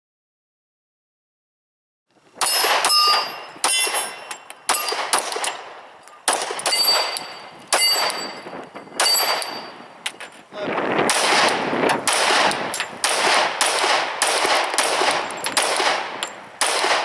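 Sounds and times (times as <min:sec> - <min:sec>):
metallic ringing clang: 0:02.4 - 0:05.4, 0:06.6 - 0:09.8
pistol shots: 0:02.4 - 0:08.4, 0:09.0 - 0:09.7, 0:11.0 - 0:17.0.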